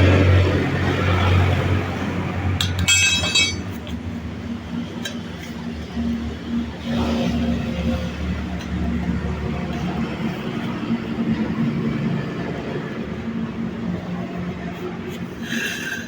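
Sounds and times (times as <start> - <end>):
metal tools clinking: 2.6 - 3.9.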